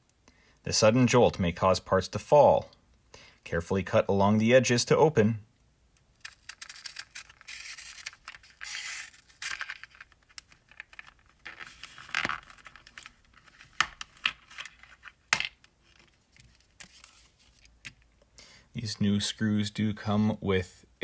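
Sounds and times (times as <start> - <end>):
plastic packaging crinkling and tearing: 6.2 - 17.7.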